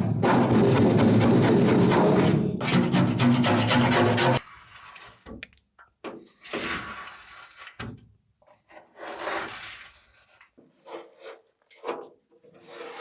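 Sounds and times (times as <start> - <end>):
rasping scraping strokes: 0.3 - 5.2.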